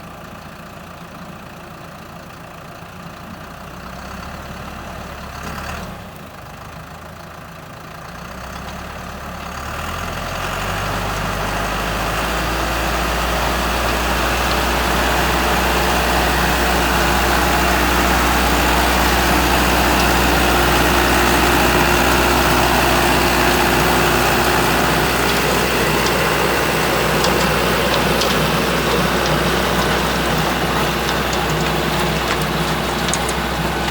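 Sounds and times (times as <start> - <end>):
tines churning soil: 10.2 - 33.9
rotary tiller engine running: 12.8 - 33.9.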